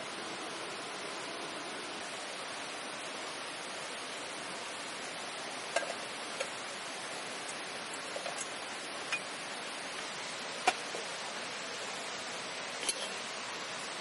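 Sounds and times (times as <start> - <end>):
campfire hissing: 0.0 - 14.0
fire crackling pops: 5.6 - 11.2.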